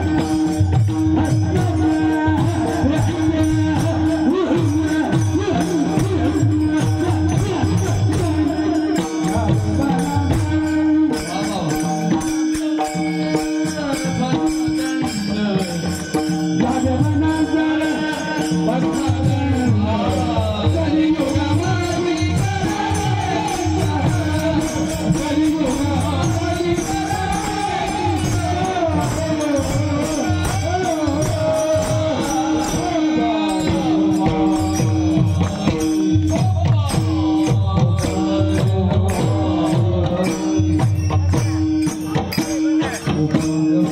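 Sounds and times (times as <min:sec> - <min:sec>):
drum: 0:00.0 - 0:43.9
jingling hand percussion: 0:00.0 - 0:43.9
person singing devotional melody: 0:00.0 - 0:43.9.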